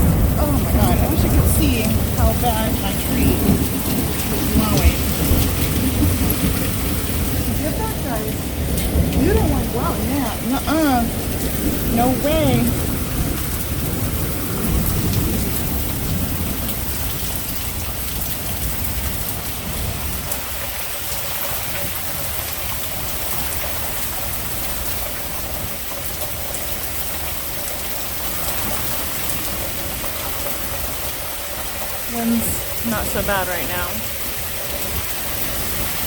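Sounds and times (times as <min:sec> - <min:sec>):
storm wind gusting: 0:00.0 - 0:21.0
heavy rain: 0:00.0 - 0:36.0
wind rumbling on microphone: 0:00.0 - 0:36.0.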